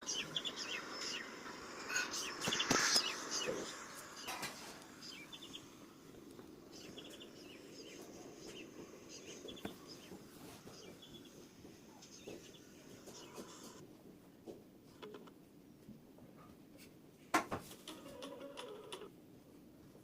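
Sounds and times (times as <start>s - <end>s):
birds chirping: 0.0s - 13.8s.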